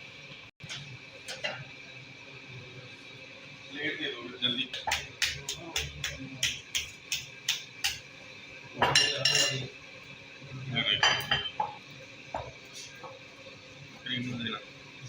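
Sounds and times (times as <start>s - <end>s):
dishes clattering: 8.8s - 9.7s, 11.0s - 11.8s.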